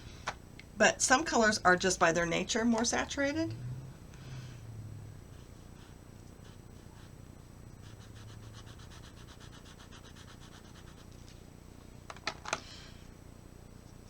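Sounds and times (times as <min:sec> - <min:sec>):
pencil scratching on paper: 0:05.3 - 0:07.2, 0:07.8 - 0:11.1.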